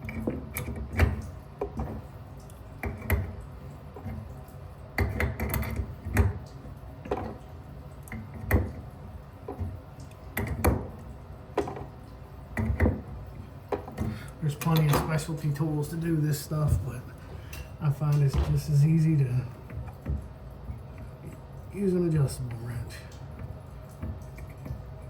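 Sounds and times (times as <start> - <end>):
tools knocking and clicking: 13.7 - 15.1.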